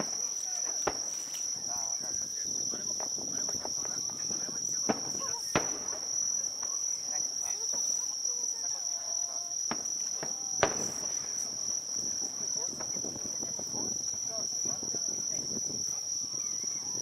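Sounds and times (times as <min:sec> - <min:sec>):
crickets chirring: 0:00.0 - 0:17.0
faint crowd voices: 0:00.0 - 0:17.0
sharp cracks: 0:04.8 - 0:06.8, 0:09.7 - 0:11.6.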